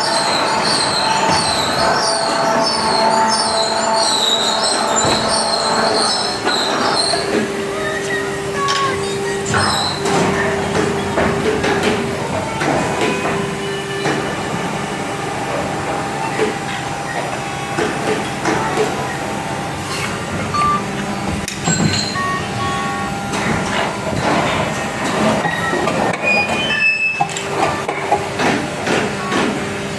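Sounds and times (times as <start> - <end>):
factory machinery running: 0.0 - 29.9
machine knocks and clatters: 9.5 - 14.7, 23.3 - 26.6.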